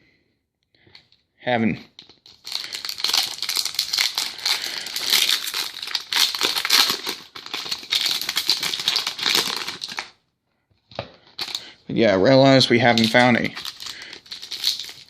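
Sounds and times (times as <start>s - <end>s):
wrapper crinkling: 2.0s - 10.2s, 11.4s - 11.7s, 12.6s - 15.0s.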